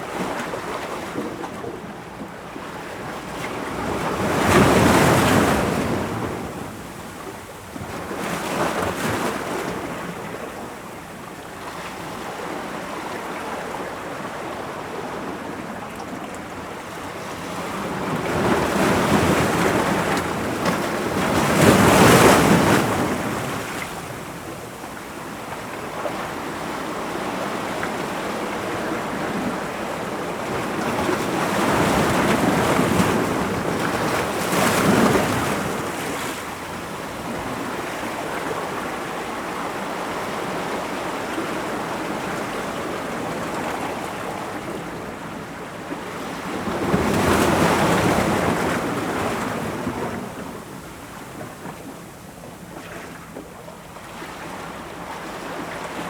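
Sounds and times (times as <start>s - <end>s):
ocean waves breaking on rocks: 17.5s - 24.3s, 25.5s - 45.0s.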